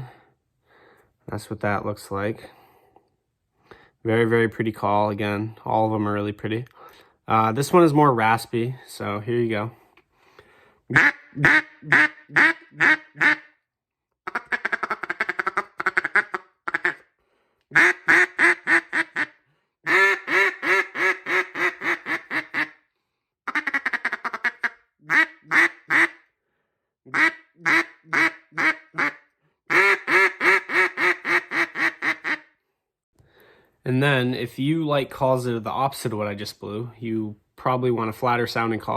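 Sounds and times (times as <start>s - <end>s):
raspy duck call quacks: 10.9s - 13.6s, 14.2s - 17.1s, 17.7s - 22.8s, 23.5s - 26.3s, 27.1s - 32.5s.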